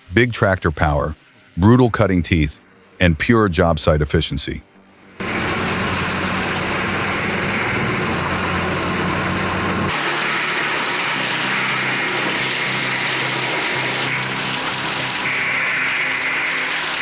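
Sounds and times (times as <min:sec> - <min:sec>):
tractor diesel engines under load: 0:05.2 - 0:09.9
machine humming: 0:05.2 - 0:17.0.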